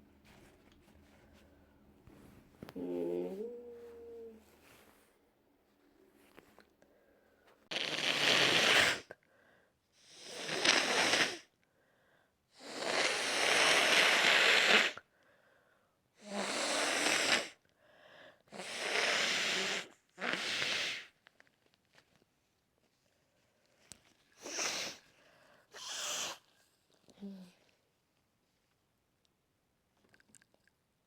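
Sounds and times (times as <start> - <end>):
person blowing congested nose: 7.7 - 9.2, 10.0 - 11.5, 12.6 - 15.1, 16.2 - 17.6, 18.5 - 21.2, 24.4 - 26.5.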